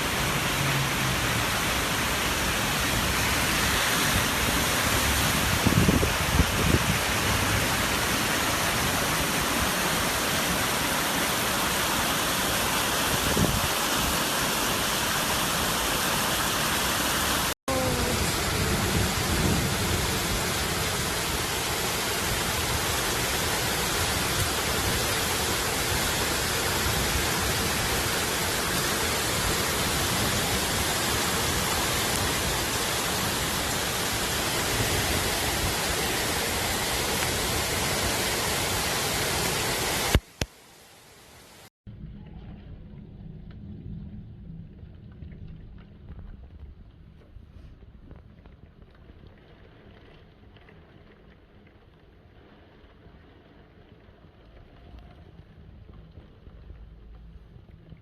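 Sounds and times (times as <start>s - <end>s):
heavy rain pouring: 0.0s - 46.8s
short low rumbles: 41.9s - 49.3s.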